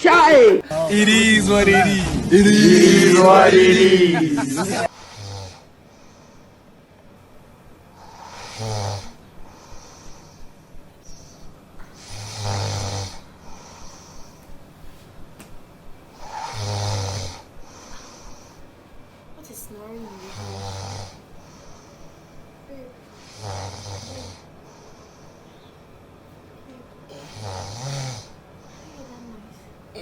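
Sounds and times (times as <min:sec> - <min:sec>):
person snoring: 0:00.8 - 0:05.6, 0:08.0 - 0:10.5, 0:12.0 - 0:14.3, 0:16.2 - 0:18.4, 0:27.1 - 0:28.3.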